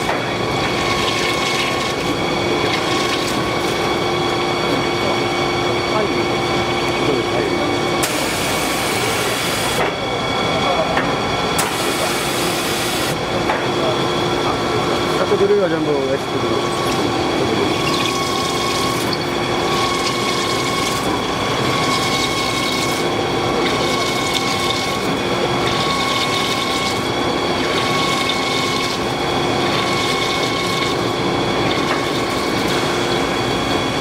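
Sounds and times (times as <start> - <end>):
drilling machine cutting whine: 0.0 - 34.0.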